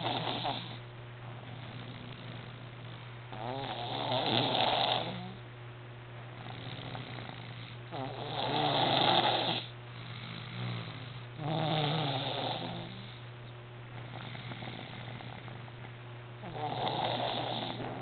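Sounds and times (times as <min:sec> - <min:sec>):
baby snoring: 0:00.0 - 0:00.8, 0:03.3 - 0:05.4, 0:06.4 - 0:13.2, 0:16.4 - 0:18.0
quiet breathing: 0:06.3 - 0:11.4, 0:12.3 - 0:18.0.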